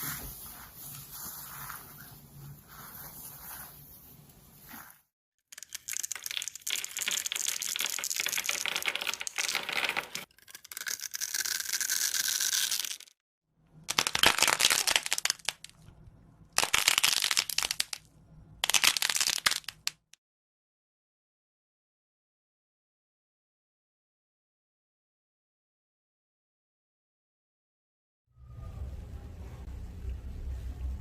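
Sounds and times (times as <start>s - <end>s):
scratchy crackling of material mixing: 0.0s - 13.0s.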